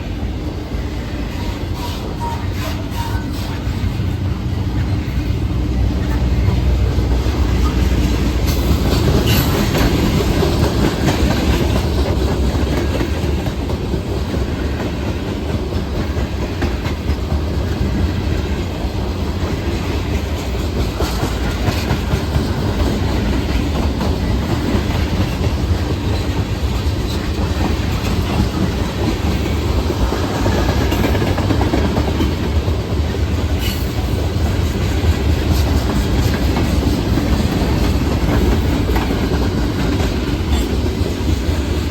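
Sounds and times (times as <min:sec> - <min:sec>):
freight train rumble: 0:00.0 - 0:41.9
wheels clicking over rail joints: 0:06.0 - 0:41.9.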